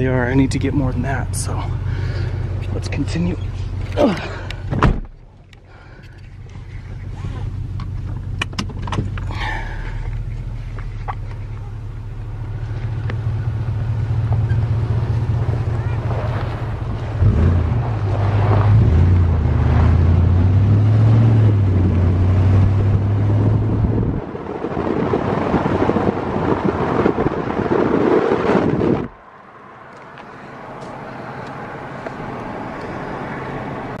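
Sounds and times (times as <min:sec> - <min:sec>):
wind buffeting microphone: 0:21.3 - 0:29.4.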